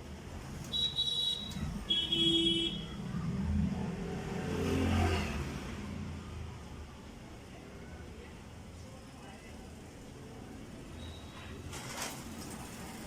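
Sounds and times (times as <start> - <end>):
vehicle passing by: 3.0 - 6.4.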